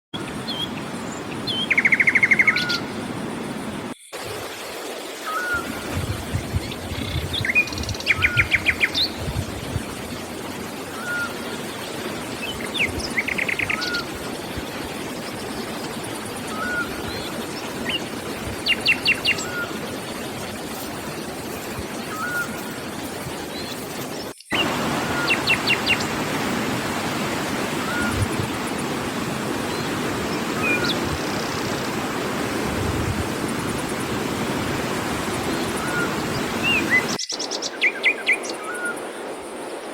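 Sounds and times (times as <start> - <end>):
songbird trill: 0.2 - 3.0, 5.2 - 9.4, 10.9 - 26.2, 29.7 - 31.6, 35.4 - 39.1
steady rushing background noise: 0.2 - 37.8.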